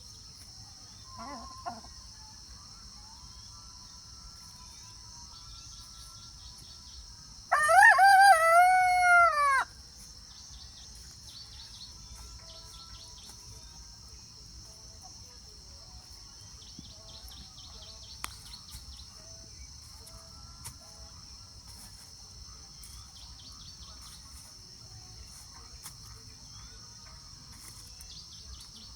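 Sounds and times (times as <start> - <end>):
rooster crowing: 7.5 - 9.7.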